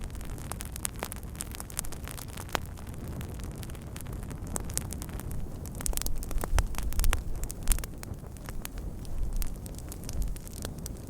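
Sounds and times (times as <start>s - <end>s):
wood fire crackling and popping: 0.0s - 11.0s.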